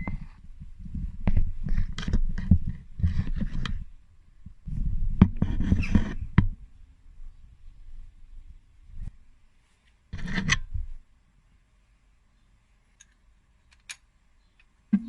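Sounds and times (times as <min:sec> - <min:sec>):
knocks clicks and scrapes: 0:10.2 - 0:10.7.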